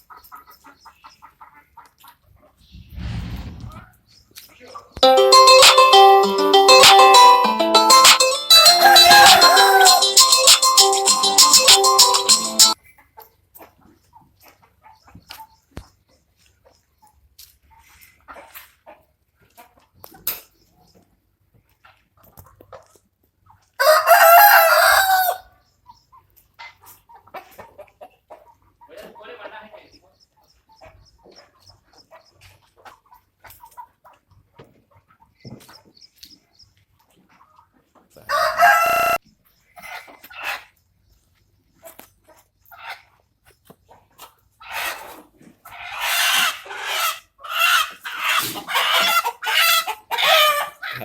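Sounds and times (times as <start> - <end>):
faint chicken clucking: 0.0 - 2.9, 12.8 - 51.0
rooster crowing: 8.6 - 10.0, 23.8 - 25.4, 38.3 - 39.2.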